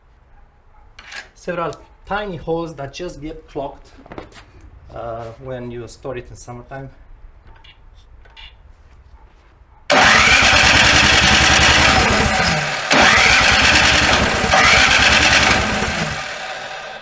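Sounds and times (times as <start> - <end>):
snow blower engine running: 9.9 - 17.0.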